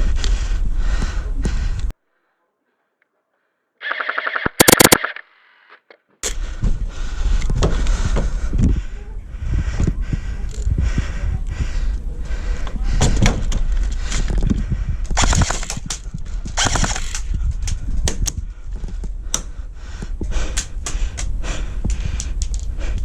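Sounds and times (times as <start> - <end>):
full-auto gun bursts: 3.8 - 5.2, 15.2 - 15.8, 16.6 - 17.2
airsoft gun shots: 4.4 - 5.2, 15.2 - 15.8, 16.6 - 17.2.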